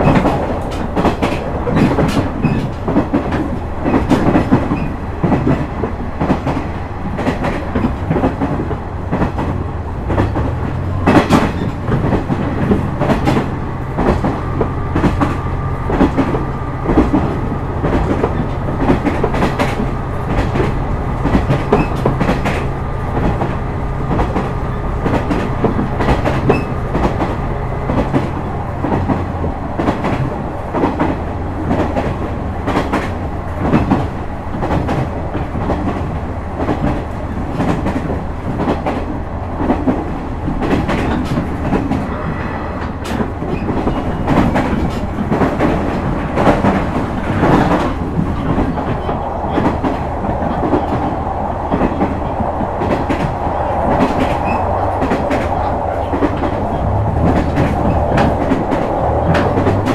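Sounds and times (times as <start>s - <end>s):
wheels clicking over rail joints: 0.0s - 42.1s
diesel engine humming: 52.4s - 59.9s.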